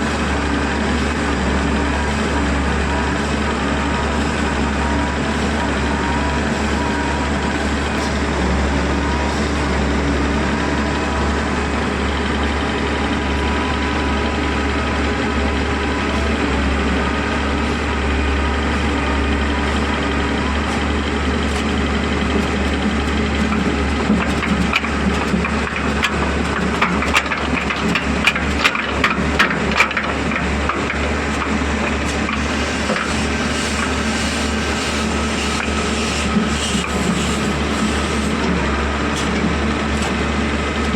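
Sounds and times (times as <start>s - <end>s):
heavy machine engine running: 0.0s - 40.9s
sharp knocks and clatter: 21.5s - 34.4s.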